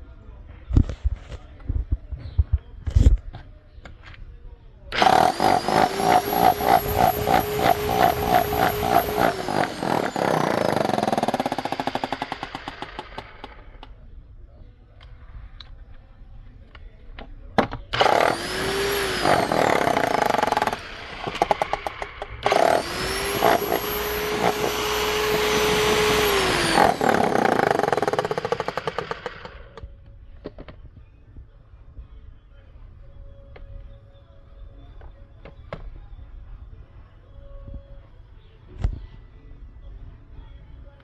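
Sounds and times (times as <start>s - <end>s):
hammer drill motor whine: 4.9s - 13.6s, 18.0s - 29.8s
hammer drill clatter: 4.9s - 13.9s, 18.0s - 29.8s.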